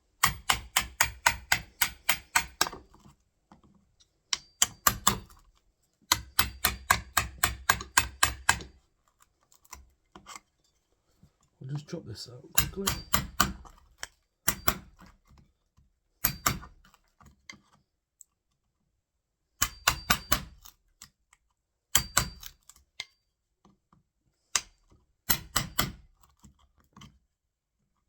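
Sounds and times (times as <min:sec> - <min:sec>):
chisel being struck into wood: 0:00.2 - 0:02.9, 0:04.3 - 0:05.4, 0:06.1 - 0:08.8, 0:12.6 - 0:13.8, 0:14.5 - 0:15.1, 0:16.2 - 0:16.7, 0:19.6 - 0:20.6, 0:22.0 - 0:22.6, 0:25.3 - 0:26.0.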